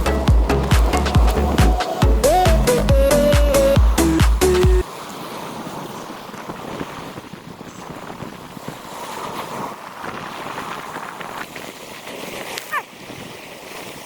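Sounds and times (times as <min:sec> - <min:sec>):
sea waves splashing on rocks: 0:00.0 - 0:02.2
wind on microphone: 0:00.0 - 0:14.0.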